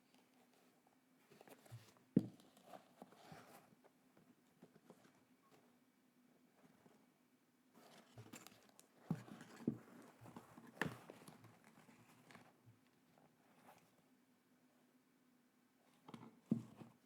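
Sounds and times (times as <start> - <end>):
soft packaging rustling: 7.7 - 14.0.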